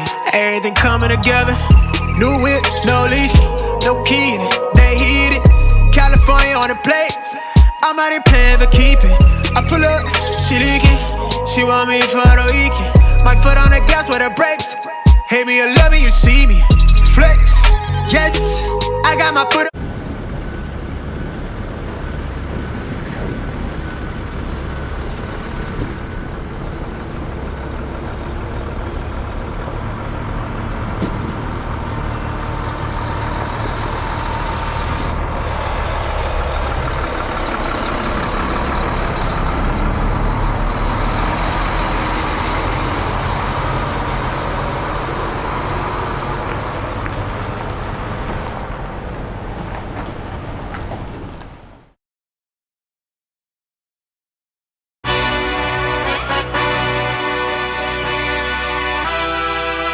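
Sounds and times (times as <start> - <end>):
road noise: 0.0 - 52.0, 55.0 - 59.9
semi-truck engine running: 0.0 - 52.0, 55.1 - 59.9.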